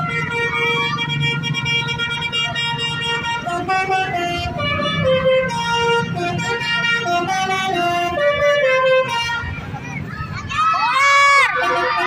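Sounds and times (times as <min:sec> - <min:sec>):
musical air horn melody: 0:00.0 - 0:09.6.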